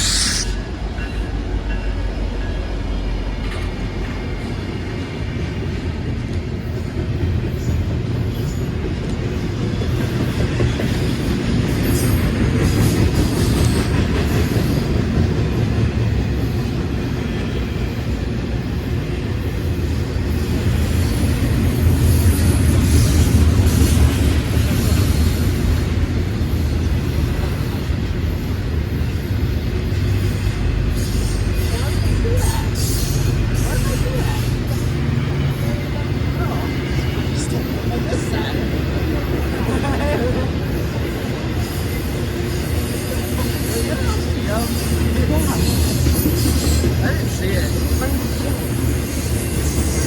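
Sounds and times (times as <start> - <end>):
high wheel squeals: 0.0 - 0.7
train wheels rumbling on rails: 0.0 - 50.0
wheels clickety-clack: 3.3 - 50.0.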